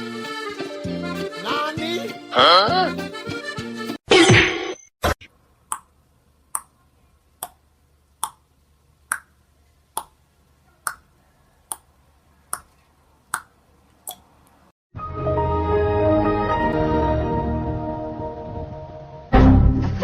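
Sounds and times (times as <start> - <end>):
music: 0.0 - 4.0, 14.9 - 20.0.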